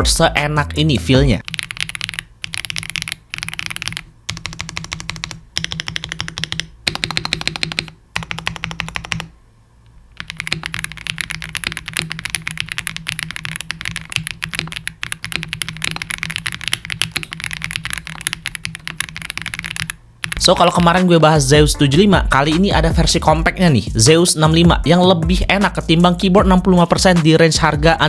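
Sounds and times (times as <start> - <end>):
mechanical keyboard typing: 1.4 - 9.3, 10.2 - 21.0.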